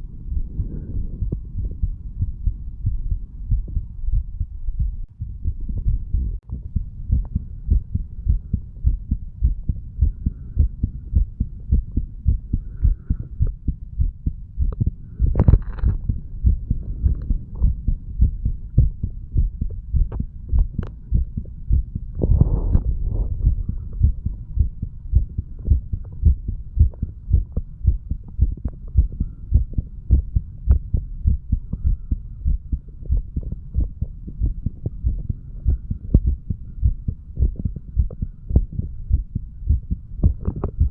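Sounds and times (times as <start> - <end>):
heartbeat: 0.0 - 40.9
rustling noise: 22.1 - 24.0.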